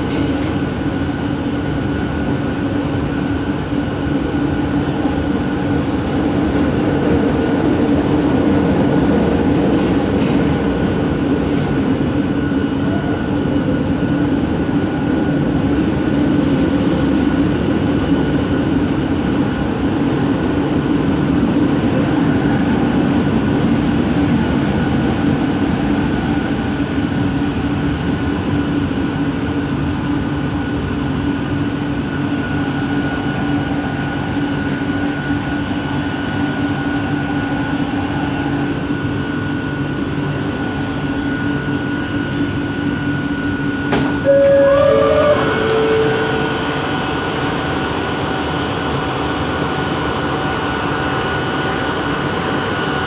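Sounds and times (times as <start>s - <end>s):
metro train running rumble: 0.0s - 53.0s
steady motor tone: 44.2s - 50.8s.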